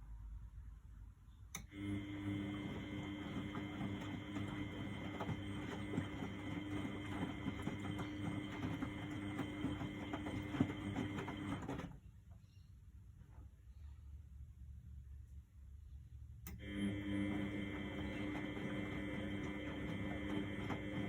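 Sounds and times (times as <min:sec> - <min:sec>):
washing machine running: 0:01.6 - 0:12.3, 0:16.4 - 0:21.0.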